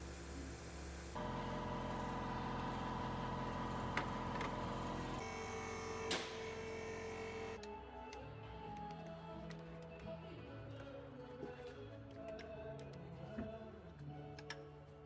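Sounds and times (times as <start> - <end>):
car engine running: 0.0 - 7.6.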